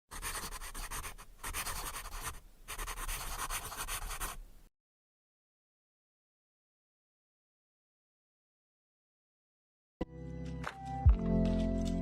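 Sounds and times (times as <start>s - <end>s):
pen scratching on paper: 0.1s - 4.4s.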